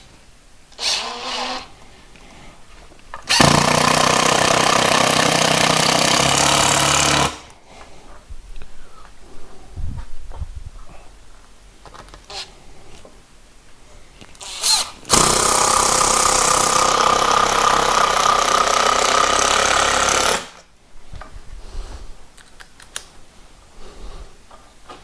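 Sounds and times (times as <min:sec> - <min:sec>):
power driver driving a screw: 0:00.8 - 0:01.7, 0:03.3 - 0:07.5, 0:14.4 - 0:20.6.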